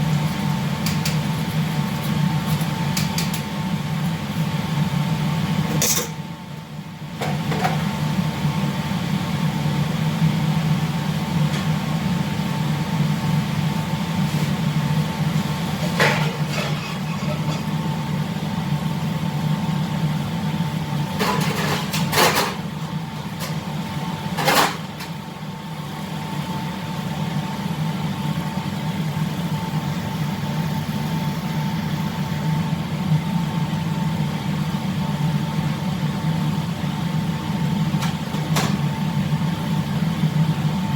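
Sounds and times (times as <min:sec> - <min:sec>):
ship engines droning hum: 0:00.0 - 0:40.9
kitchen utensils clattering: 0:15.9 - 0:17.7, 0:21.2 - 0:22.6.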